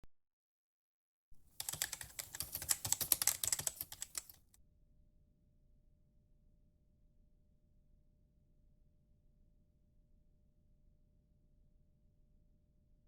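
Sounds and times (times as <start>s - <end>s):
keyboard typing clicks: 1.6s - 4.4s.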